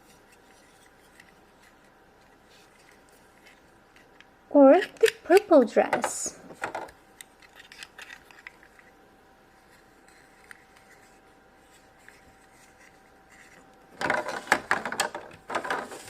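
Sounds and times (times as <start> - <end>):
plastic doll clicks and rubbing: 0.2 - 5.7, 6.8 - 8.9.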